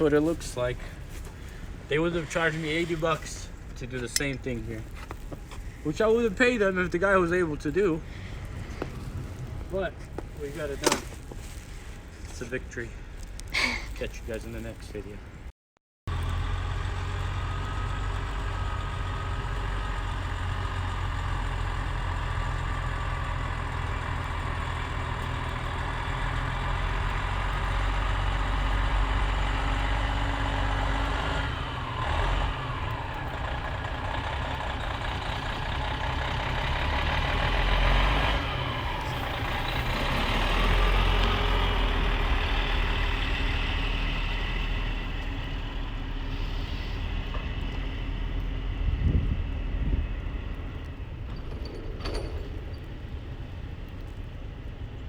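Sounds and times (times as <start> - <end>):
heavy truck engine running: 16.1 - 55.0.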